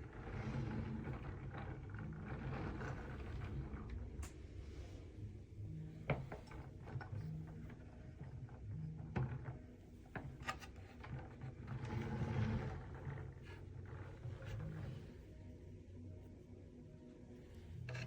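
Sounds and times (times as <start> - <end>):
low hum: 0.0 - 9.0.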